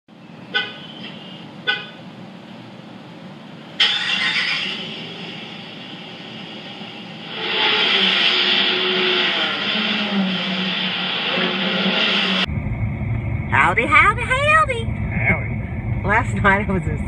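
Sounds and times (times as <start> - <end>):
steady noise: 0.1 - 17.0
car horn toots: 0.5 - 2.0
loud hiss: 3.8 - 12.5.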